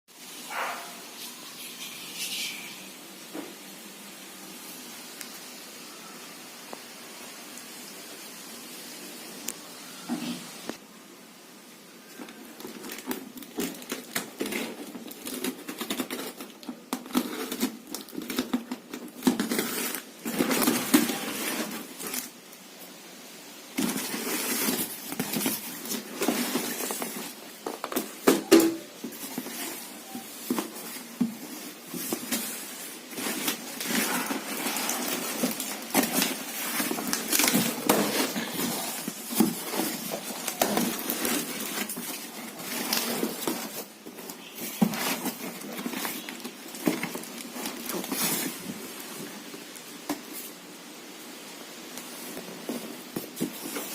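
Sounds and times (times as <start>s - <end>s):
cardboard and plastic packaging rustling: 11.9s - 53.9s.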